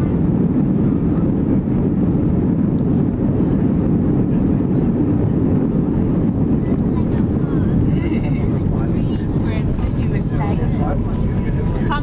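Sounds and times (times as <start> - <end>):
airplane cabin rumble: 0.0 - 12.0.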